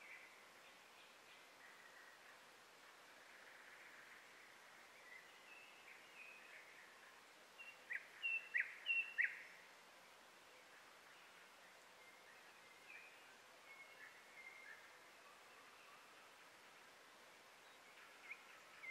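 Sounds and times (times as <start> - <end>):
small birds chirping: 3.3 - 9.7, 17.2 - 18.9.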